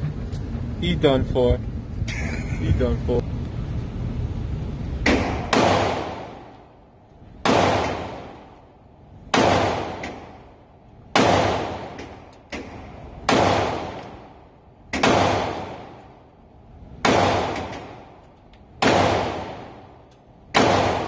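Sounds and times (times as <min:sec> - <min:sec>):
handgun shots echoing: 0:07.4 - 0:08.4, 0:09.3 - 0:10.4, 0:11.2 - 0:14.2, 0:14.9 - 0:16.1, 0:17.0 - 0:18.1, 0:20.5 - 0:21.0.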